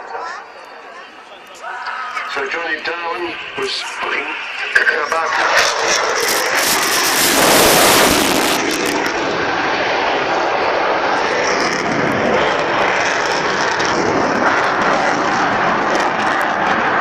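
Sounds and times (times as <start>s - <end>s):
jet engine noise: 0.0s - 17.0s.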